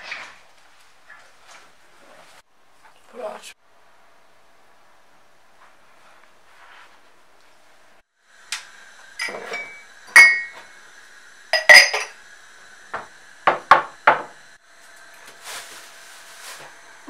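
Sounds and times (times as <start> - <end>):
dishes and cups clinking: 9.2 - 10.6, 11.6 - 12.2.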